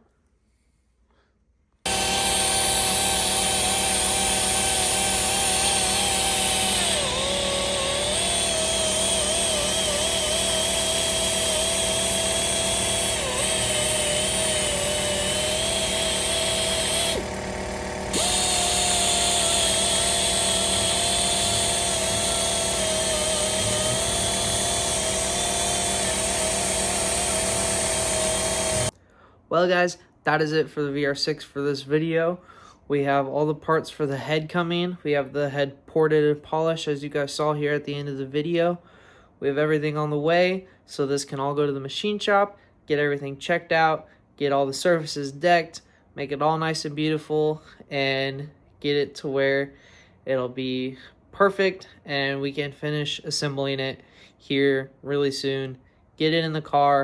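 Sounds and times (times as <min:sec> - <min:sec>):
rotary grinder whining: 0:01.9 - 0:28.9.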